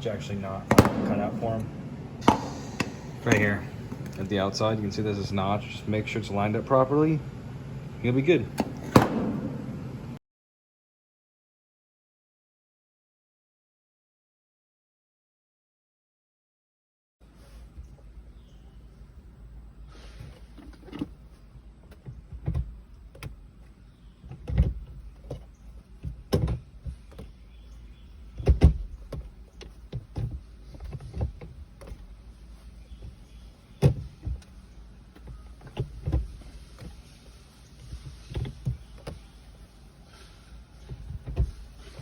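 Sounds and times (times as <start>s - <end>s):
gear shifter clunks and clicks: 0.0s - 4.4s, 20.2s - 42.0s
low steady rumble: 0.0s - 10.2s, 17.3s - 42.0s.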